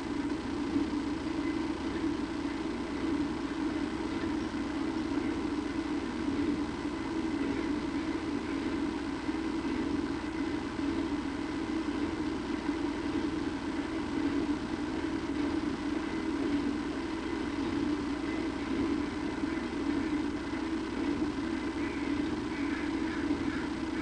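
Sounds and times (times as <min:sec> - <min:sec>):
faint steady high tones: 0:00.0 - 0:24.0
steady low hum: 0:00.0 - 0:24.0.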